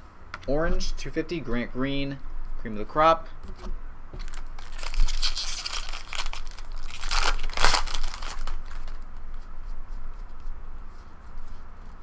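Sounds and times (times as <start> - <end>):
card pack wrapper crinkling: 4.2 - 9.0.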